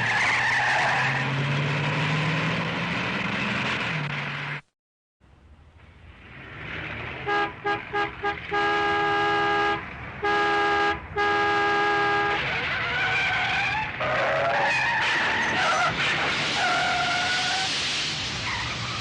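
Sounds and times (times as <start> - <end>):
tyres squealing in a skid: 0.0 - 2.5, 12.4 - 19.0
car noise: 0.0 - 19.0
car horn blasts: 7.2 - 12.6.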